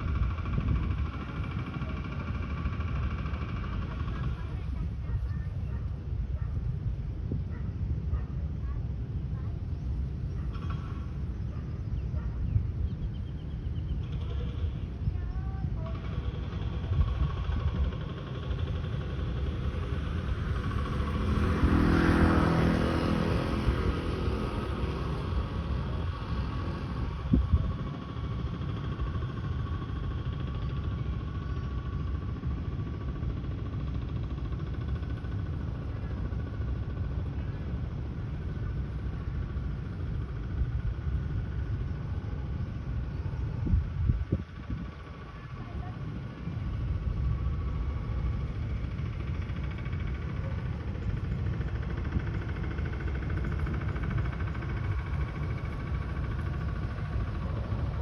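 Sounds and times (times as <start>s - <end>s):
outdoor background rumble: 0.0s - 58.0s
vehicle passing by: 19.5s - 27.8s.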